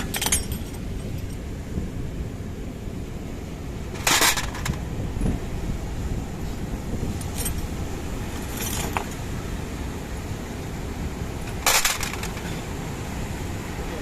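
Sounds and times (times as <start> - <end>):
metallic clinks of tools: 0.0 - 1.4
steady low rumble: 0.0 - 14.0.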